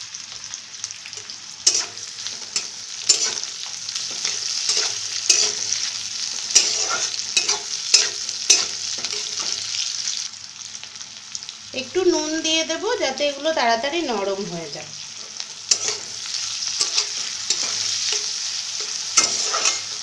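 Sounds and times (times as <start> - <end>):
vegetables sizzling in hot oil: 0.0 - 20.0
utensil scraping against pan: 1.7 - 9.6, 15.7 - 20.0.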